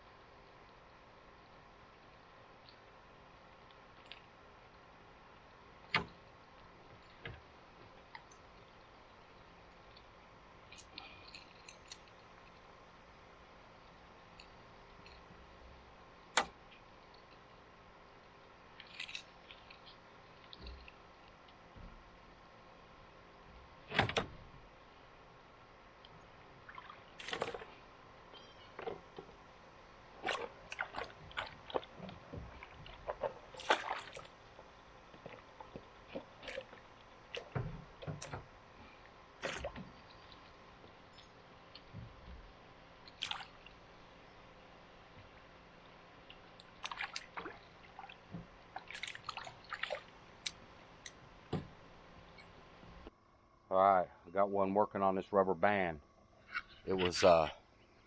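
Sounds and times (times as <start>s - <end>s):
water splashes and drips: 26.6s - 27.8s, 30.1s - 40.6s, 43.1s - 43.8s, 46.2s - 51.7s.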